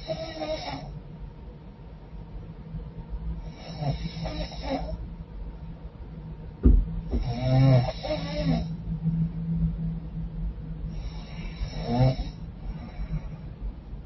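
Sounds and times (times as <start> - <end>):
woman snoring congested: 0.0 - 0.9, 7.2 - 8.7, 11.0 - 13.2.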